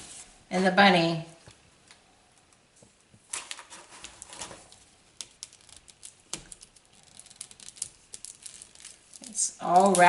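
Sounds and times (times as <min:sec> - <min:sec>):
plastic wrapping crinkling: 0:03.3 - 0:10.0.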